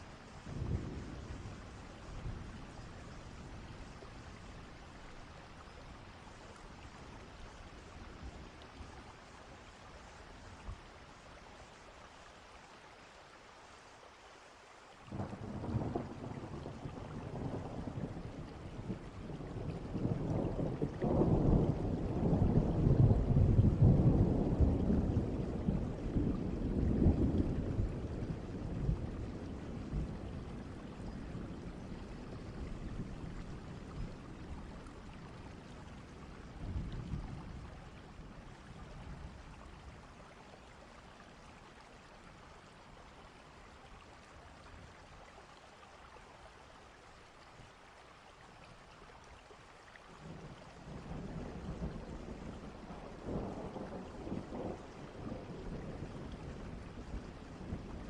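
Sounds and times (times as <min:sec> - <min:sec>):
low rolling thunder: 0:00.0 - 0:05.3, 0:15.1 - 0:40.2, 0:50.2 - 0:58.0
steady rain: 0:00.0 - 0:58.0.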